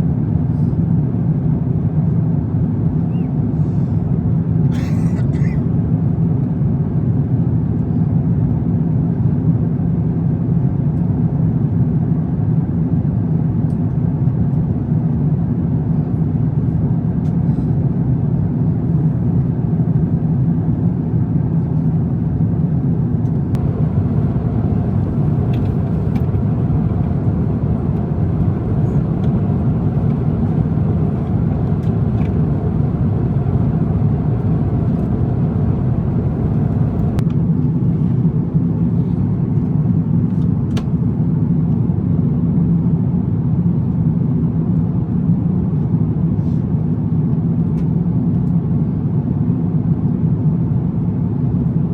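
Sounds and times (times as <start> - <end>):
airplane cabin engine roar: 0.0 - 51.9
faint clicks: 23.6 - 33.6.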